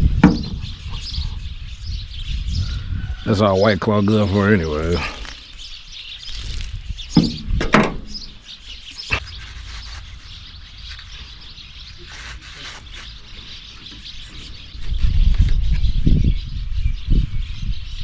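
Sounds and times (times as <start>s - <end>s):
small birds chirping: 0.0s - 18.0s
handling knocks: 7.2s - 8.2s.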